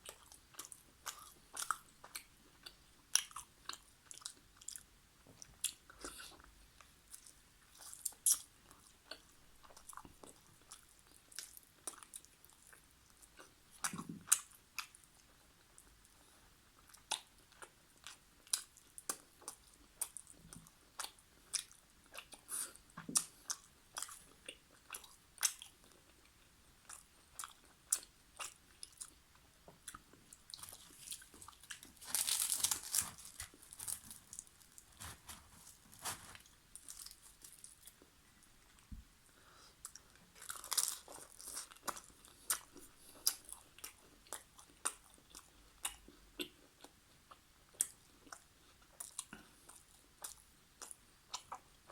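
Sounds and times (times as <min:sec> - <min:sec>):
crunchy chewing: 0:26.8 - 0:38.1.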